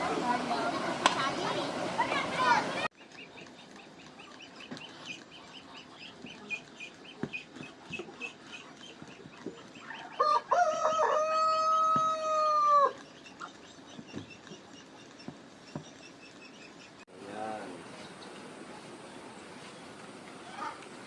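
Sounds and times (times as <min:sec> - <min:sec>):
rooster crowing: 0:09.9 - 0:13.0.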